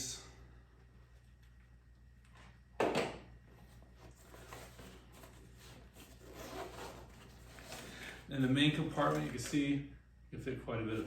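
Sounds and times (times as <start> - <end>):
fabric bag rasp: 5.6 - 8.2.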